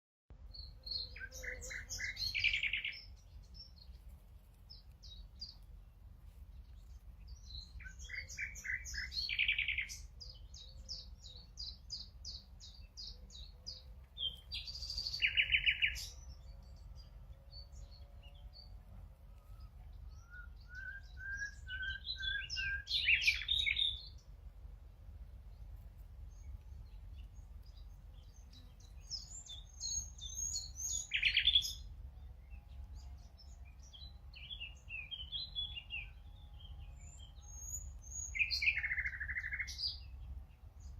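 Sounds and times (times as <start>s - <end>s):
nightingale singing: 0.4s - 5.8s, 6.5s - 18.7s, 19.3s - 24.3s, 25.5s - 40.9s
steady low rumble: 3.0s - 8.4s, 15.7s - 21.2s, 24.0s - 30.4s.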